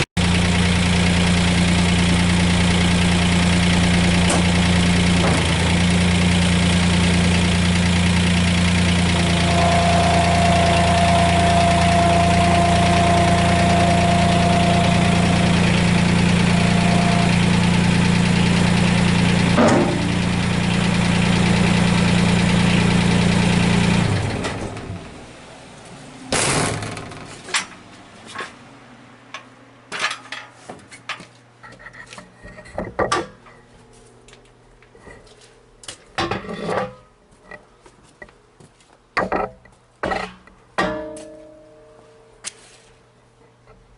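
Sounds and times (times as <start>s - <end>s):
loader engine idling: 0.0s - 27.5s.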